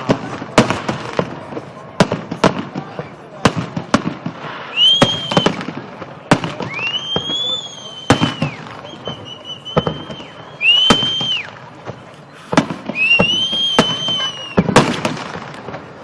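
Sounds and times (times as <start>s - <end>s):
firework bangs: 0.0s - 16.0s
whistling firework shells: 4.4s - 16.0s.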